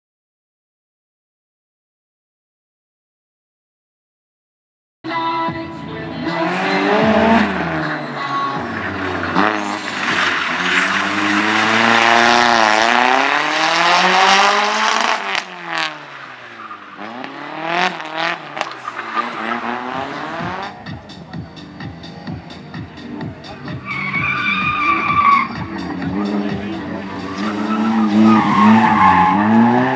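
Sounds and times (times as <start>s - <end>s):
race car engine revving: 6.0s - 29.9s.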